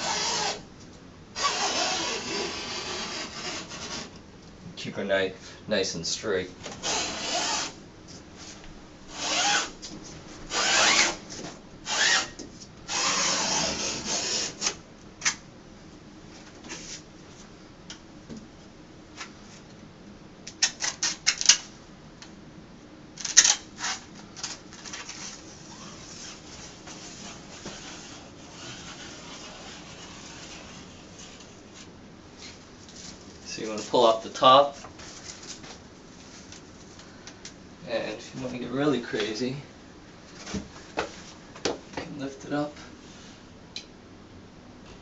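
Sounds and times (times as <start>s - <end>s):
utility knife slicing vinyl: 1.4s - 4.2s, 11.9s - 15.4s, 23.2s - 31.5s
short scrape: 25.1s - 32.6s.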